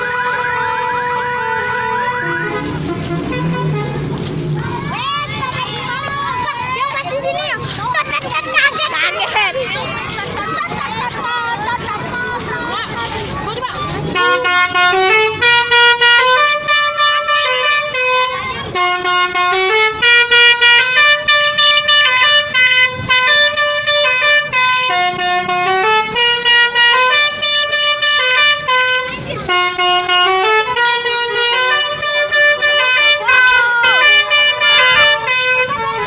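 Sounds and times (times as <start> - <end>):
musical bus horn melody: 0.0 - 4.4, 14.0 - 36.0.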